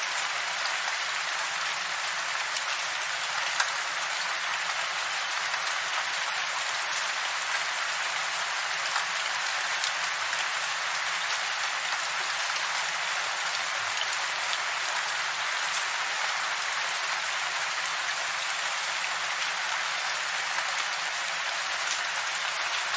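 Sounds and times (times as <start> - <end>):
steady rain patter: 0.0 - 22.9.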